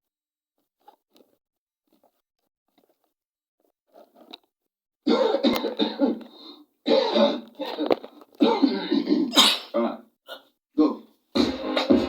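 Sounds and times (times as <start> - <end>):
faint clicks and rustles: 0.7 - 4.6
person coughing: 5.1 - 6.3, 6.9 - 10.4
throat clearing: 6.9 - 11.0.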